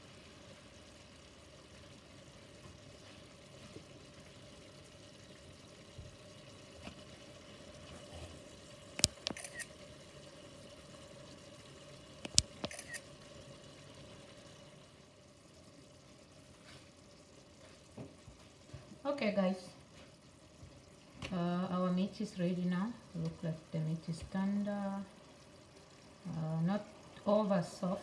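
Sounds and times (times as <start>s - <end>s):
pot simmering: 0.0s - 28.0s
sharp clicks: 9.0s - 9.6s, 12.3s - 13.0s.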